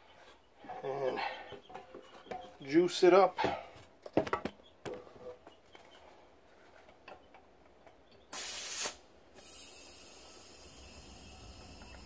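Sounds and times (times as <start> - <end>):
loud blast of air: 8.3 - 11.5
air hissing with faint whistle: 8.3 - 12.0.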